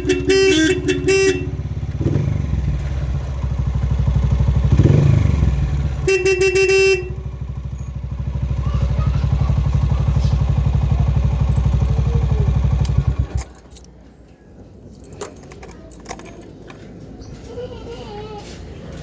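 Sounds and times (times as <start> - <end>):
motorcycle engine running: 0.0 - 13.9
light clicks and clatter: 11.5 - 12.2, 12.8 - 17.6.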